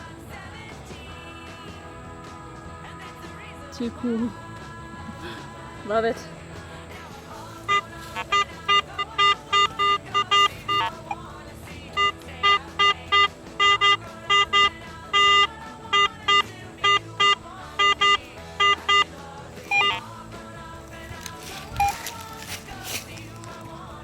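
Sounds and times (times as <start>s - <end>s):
metal detector beeping: 7.6s - 11.3s, 11.9s - 19.1s, 19.7s - 20.1s, 21.6s - 22.1s.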